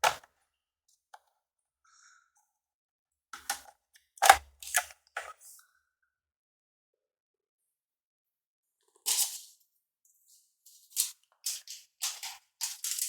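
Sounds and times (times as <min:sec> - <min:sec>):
plastic case clicks and knocks: 0:03.4 - 0:04.9.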